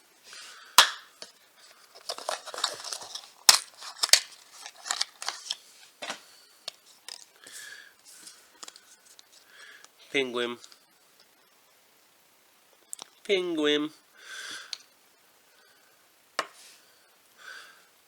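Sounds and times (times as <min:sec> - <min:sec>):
packaging crinkling and rustling: 0:01.2 - 0:07.4.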